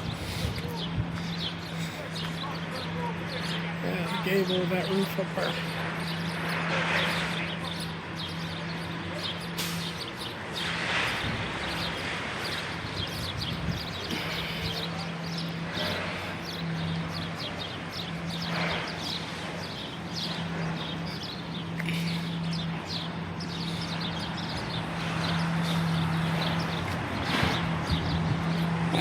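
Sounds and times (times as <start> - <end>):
faint street noise: 0.0 - 29.0
low engine hum: 0.0 - 29.0
small birds chirping: 0.0 - 29.0.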